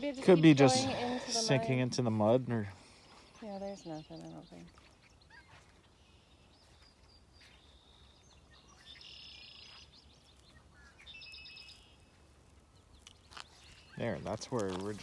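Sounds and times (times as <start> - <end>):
songbird trills and chirps: 2.8 - 14.2.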